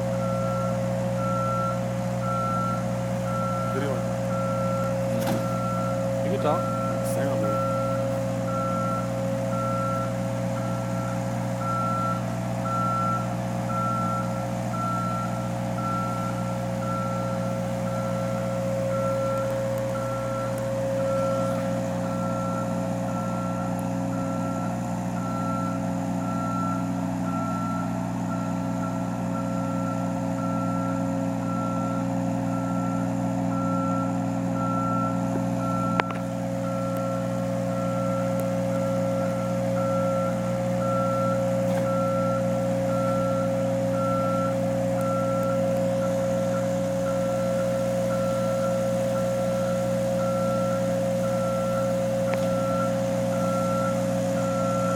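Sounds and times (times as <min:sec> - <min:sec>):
diesel engine running: 0:00.0 - 0:54.9
reversing alarm beeping: 0:00.0 - 0:54.9.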